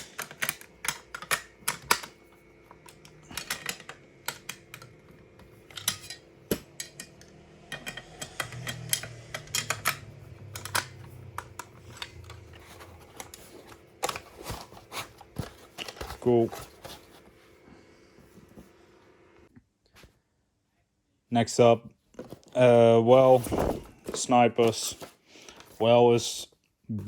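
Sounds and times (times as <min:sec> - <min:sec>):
toy rifle clicks and knocks: 0:00.0 - 0:02.2, 0:06.6 - 0:12.4.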